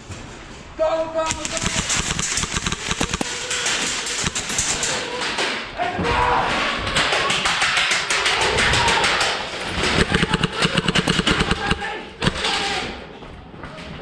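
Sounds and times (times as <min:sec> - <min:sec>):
airsoft guns firing bursts: 0:01.3 - 0:05.1, 0:09.6 - 0:12.7
single airsoft shot: 0:10.0 - 0:12.6.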